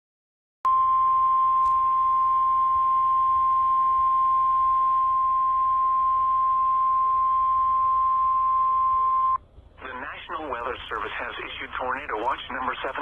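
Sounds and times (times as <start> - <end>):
steady high alarm tone: 0.7 - 9.4
faint radio hiss: 8.9 - 13.0.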